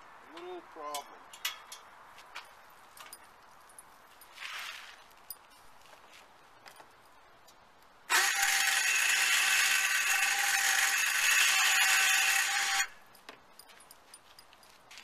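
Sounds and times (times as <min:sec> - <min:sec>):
winch motor whining: 0:08.1 - 0:13.0.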